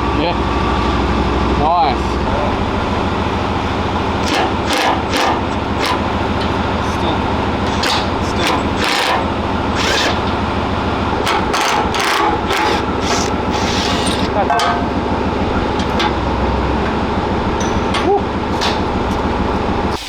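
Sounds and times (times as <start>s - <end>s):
engine drone: 0.0s - 20.0s
short sharp noisy bursts: 4.1s - 6.4s, 7.6s - 10.3s, 11.2s - 14.4s.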